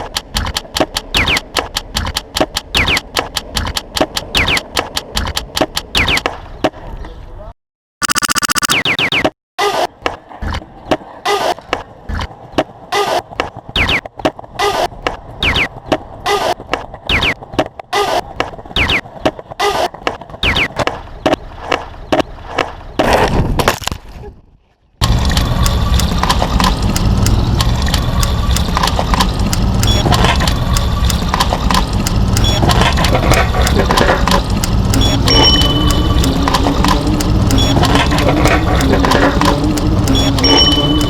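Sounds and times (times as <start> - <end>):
looped clattering knocks and clicks: 0.0 - 6.3, 25.0 - 41.0
rumbling traffic-like noise: 9.8 - 23.7, 25.0 - 41.0
short falling squeaks: 12.9 - 20.9.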